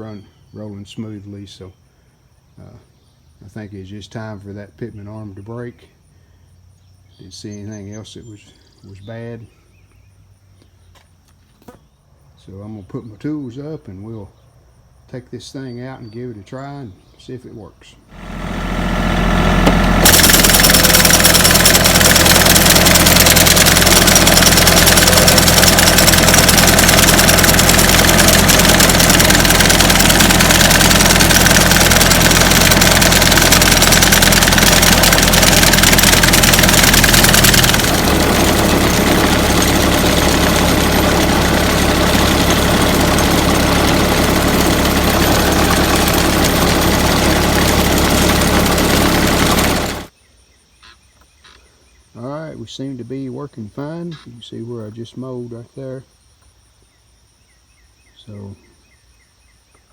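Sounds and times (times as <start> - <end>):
diesel tractor engine: 18.1 - 50.1
sickle bar mower: 18.1 - 50.1.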